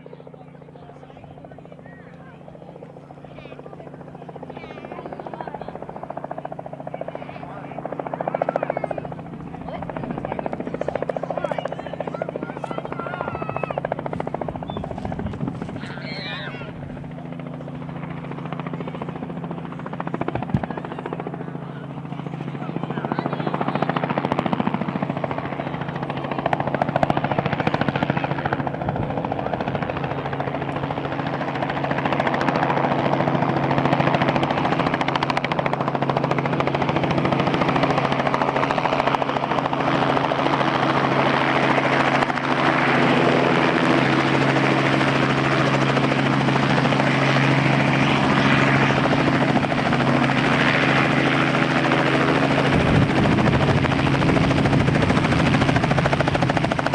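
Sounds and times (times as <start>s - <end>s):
helicopter engine and rotor hum: 0.0s - 56.9s.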